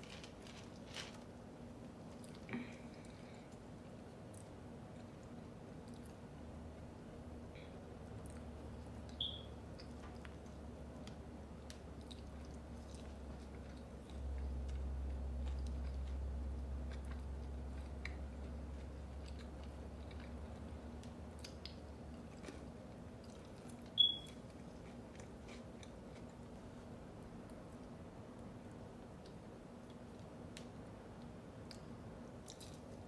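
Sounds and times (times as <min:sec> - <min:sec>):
chewing and biting food: 0:08.1 - 0:26.7
high-pitched chirp: 0:09.2 - 0:09.5, 0:24.0 - 0:24.3.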